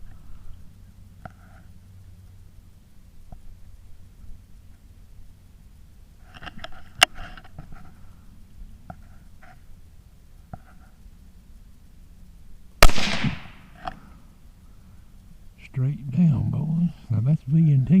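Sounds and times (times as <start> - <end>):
rifle shot: 12.8 - 13.8.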